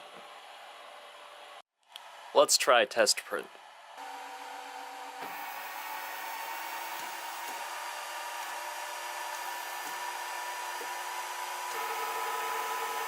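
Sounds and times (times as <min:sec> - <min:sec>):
three d printer whirring: 0:04.0 - 0:13.0.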